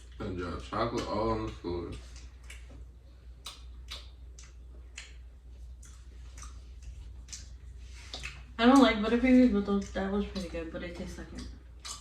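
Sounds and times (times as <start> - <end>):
faint low hum: 0.0 - 12.0
chewing crunchy candy bar: 11.3 - 12.0.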